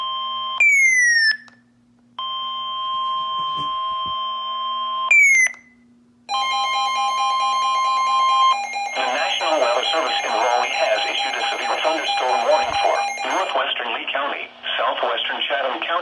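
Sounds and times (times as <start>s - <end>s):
pulsing lower tone: 6.3s - 13.6s
steady alarm tone: 6.3s - 13.6s
steady chord of alert tones: 6.3s - 13.6s.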